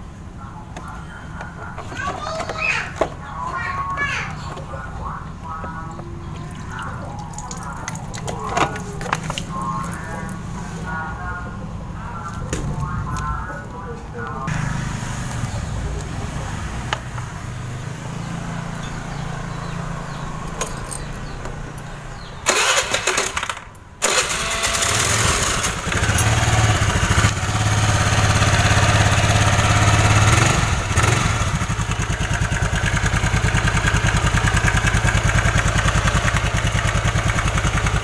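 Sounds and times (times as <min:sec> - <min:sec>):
scooter engine idling: 0:14.4 - 0:38.0
scooter engine cranking: 0:22.4 - 0:38.0.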